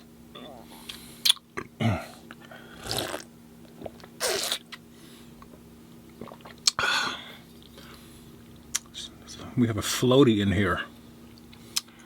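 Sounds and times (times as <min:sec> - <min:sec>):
person slurping juice: 0:02.7 - 0:04.7, 0:06.2 - 0:06.7.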